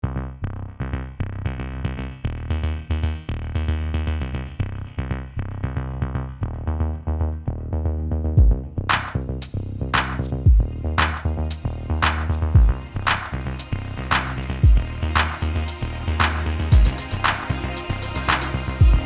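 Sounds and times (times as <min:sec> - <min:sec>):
heavy bass: 0:00.0 - 0:19.0
drum machine beat: 0:08.4 - 0:19.0
synthesizer melody: 0:11.5 - 0:19.0.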